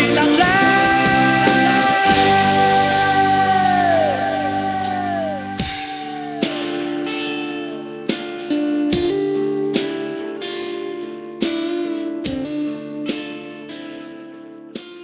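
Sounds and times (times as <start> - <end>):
steady held tone: 0.0 - 9.7
plucked guitar: 0.0 - 15.0.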